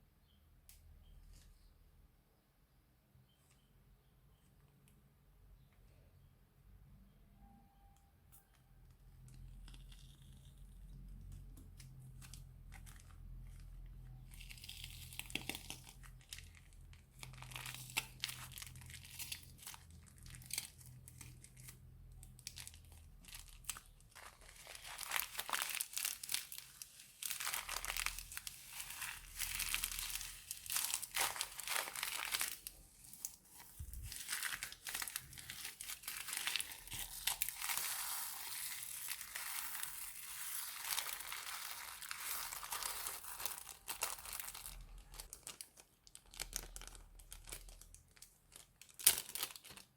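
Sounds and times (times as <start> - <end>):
plastic bag crinkling with slime: 9.2 - 49.9.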